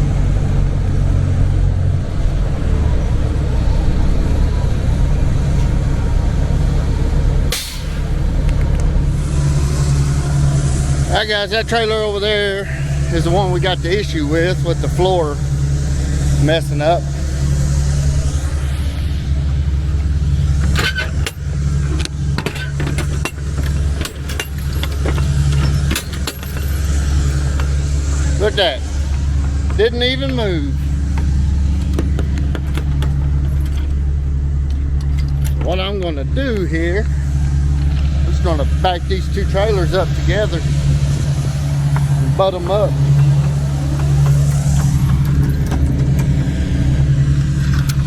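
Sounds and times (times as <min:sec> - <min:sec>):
diesel truck engine humming: 0:00.0 - 0:48.0
air brake hiss: 0:07.5 - 0:08.2
clicks and rattles: 0:20.4 - 0:28.2, 0:31.1 - 0:36.1.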